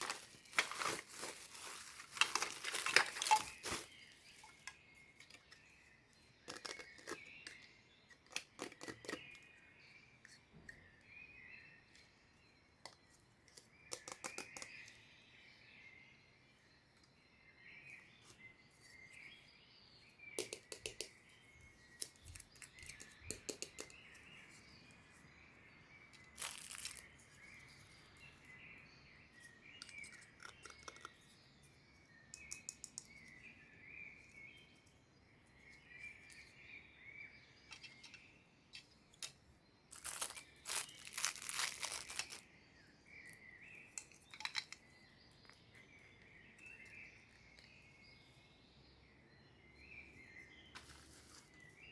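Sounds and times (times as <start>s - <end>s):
packaging crinkling: 0.0s - 4.0s, 26.3s - 27.0s, 39.9s - 42.4s
birds chirping: 0.0s - 51.9s.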